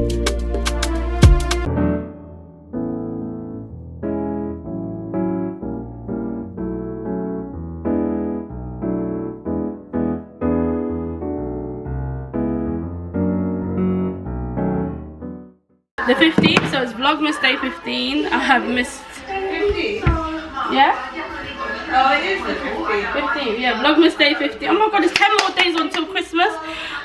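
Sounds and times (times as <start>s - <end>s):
piano chords and notes: 0.0s - 15.6s.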